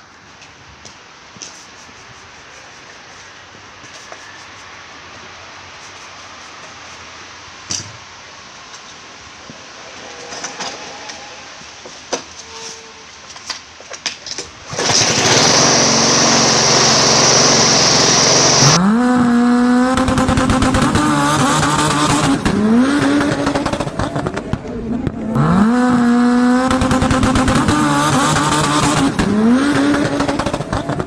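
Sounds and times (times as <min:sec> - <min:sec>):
hiss of spinning tyres: 0:00.7 - 0:12.8, 0:14.7 - 0:18.8
engine revving: 0:14.7 - 0:31.0.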